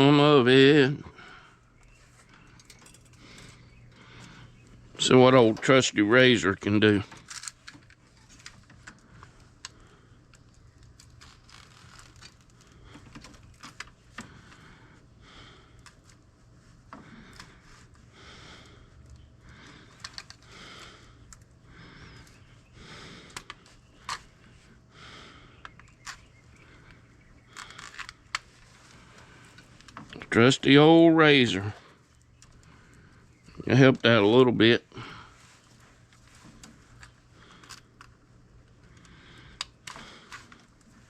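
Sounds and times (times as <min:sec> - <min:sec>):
insulation tearing: 0:07.0 - 0:14.7, 0:25.9 - 0:30.2.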